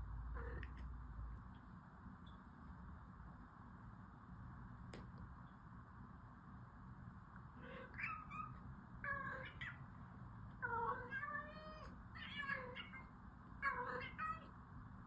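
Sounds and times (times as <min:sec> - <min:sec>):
cat meowing: 0:07.6 - 0:09.8, 0:10.6 - 0:14.5.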